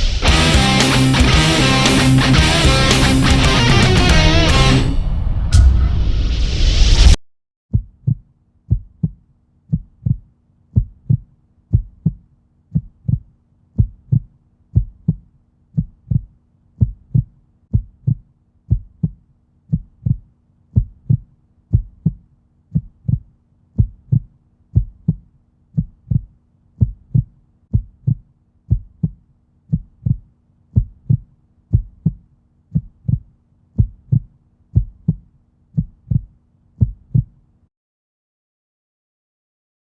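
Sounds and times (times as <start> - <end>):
heartbeat double thump: 7.7 - 10.2, 10.8 - 12.2, 12.8 - 14.2, 14.8 - 15.2, 15.8 - 20.2, 20.8 - 22.2, 23.8 - 24.2, 24.8 - 25.2, 25.8 - 30.2, 30.8 - 32.2, 32.8 - 35.2, 35.8 - 37.3.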